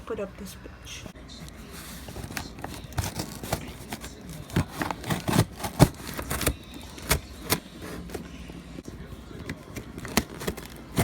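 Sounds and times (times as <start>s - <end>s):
cardboard box being opened: 1.4s - 8.4s, 9.4s - 11.0s.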